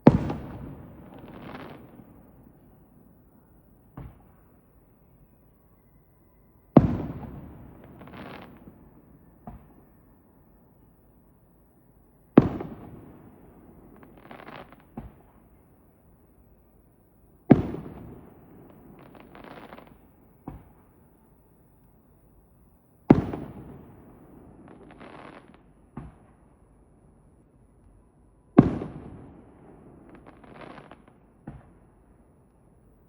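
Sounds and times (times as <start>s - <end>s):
firework crackling shimmer: 0.0s - 2.3s, 7.8s - 9.0s.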